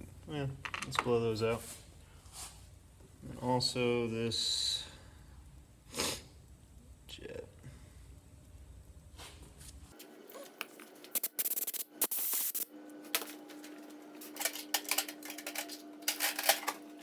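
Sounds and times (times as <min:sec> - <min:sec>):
compressed air hissing blasts: 0:11.0 - 0:12.7.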